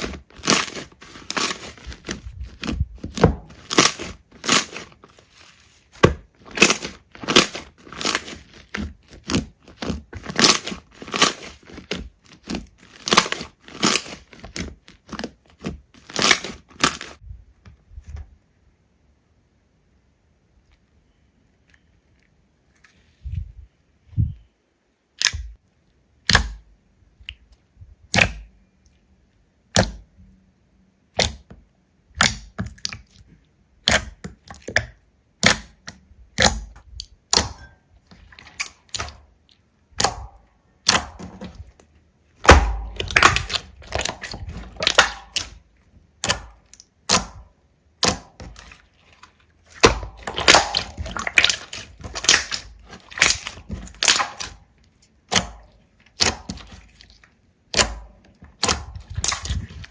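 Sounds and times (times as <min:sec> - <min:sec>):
crackling slime squelches: 0:00.0 - 0:17.2, 0:31.0 - 0:59.9.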